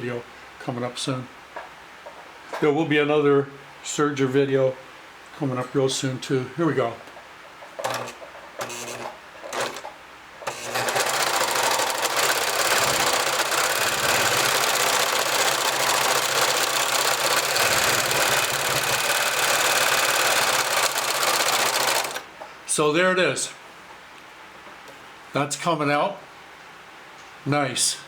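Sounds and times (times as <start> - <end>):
serger sewing machine running: 7.8 - 22.3.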